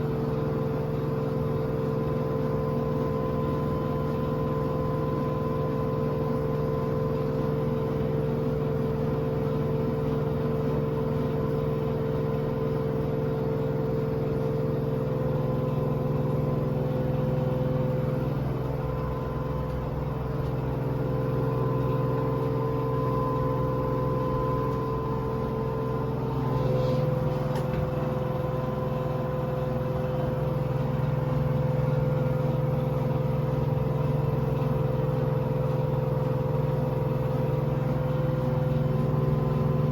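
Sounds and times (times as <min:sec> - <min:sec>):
washing machine spin cycle: 0:00.0 - 0:39.9.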